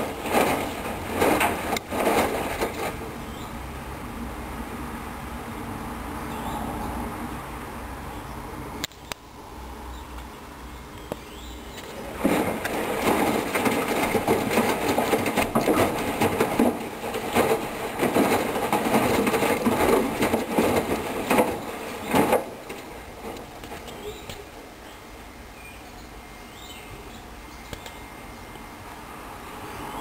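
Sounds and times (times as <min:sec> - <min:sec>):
load tumbling and knocking: 0:00.0 - 0:03.4, 0:11.7 - 0:24.8.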